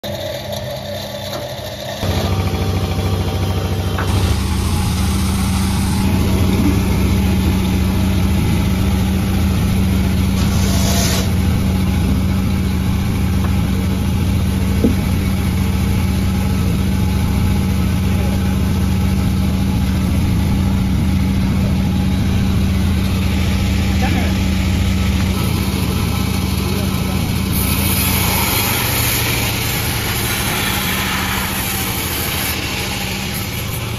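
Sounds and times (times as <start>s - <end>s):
sawmill engine humming: 0.1s - 33.9s
brief hiss: 10.4s - 11.3s.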